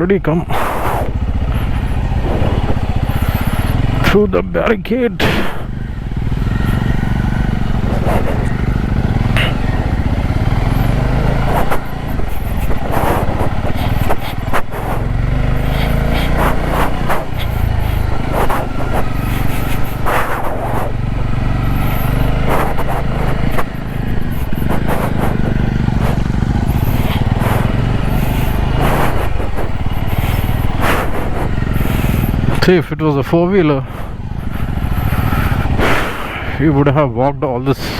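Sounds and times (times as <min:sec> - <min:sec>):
motorcycle engine running: 0:00.0 - 0:37.9.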